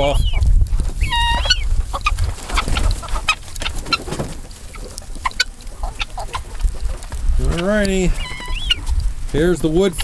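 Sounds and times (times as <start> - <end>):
chickens clucking: 0.0 - 10.0.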